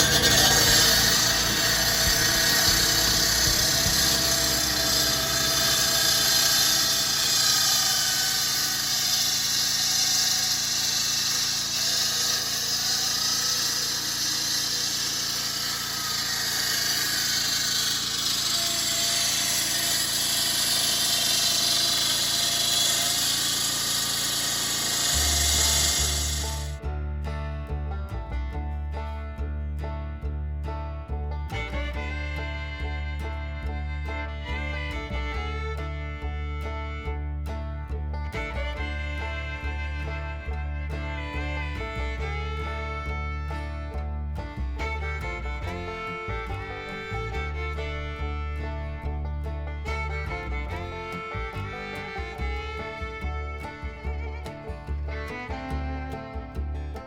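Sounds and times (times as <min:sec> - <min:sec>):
concrete saw cutting concrete: 0:00.0 - 0:26.8, 0:38.3 - 0:43.9, 0:44.7 - 0:48.8.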